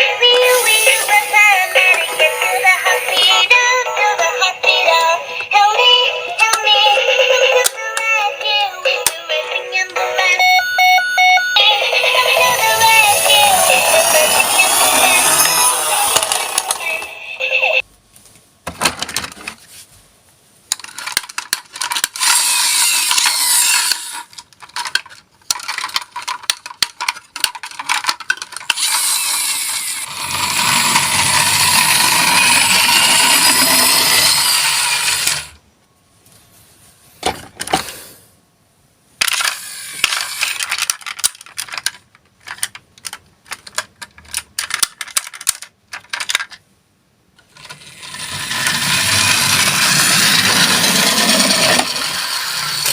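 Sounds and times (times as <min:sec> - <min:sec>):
toy cars rolling: 0:00.2 - 0:05.6, 0:11.7 - 0:17.6, 0:20.7 - 0:35.6, 0:39.2 - 0:46.6, 0:47.4 - 0:52.9
toy cars clattering: 0:12.0 - 0:17.2, 0:20.7 - 0:35.6, 0:39.2 - 0:46.6, 0:47.4 - 0:52.9.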